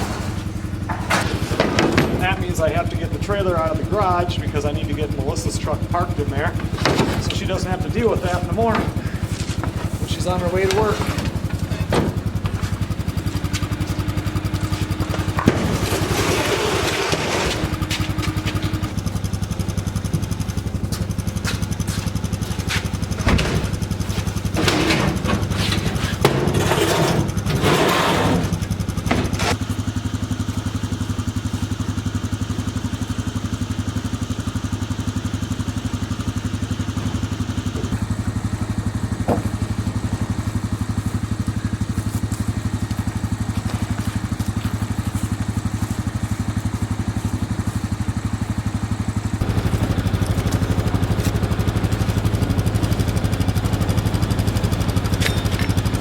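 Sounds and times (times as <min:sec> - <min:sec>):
engine idling: 0:00.0 - 0:56.0.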